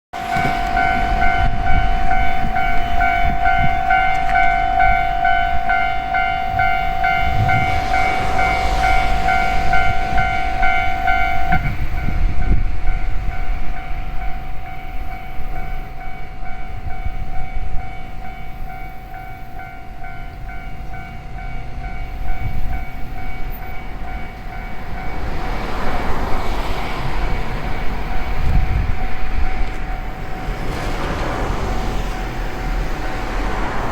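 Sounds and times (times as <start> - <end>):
train rumbling past: 0.1 - 33.9
level crossing bell ringing: 0.3 - 8.6.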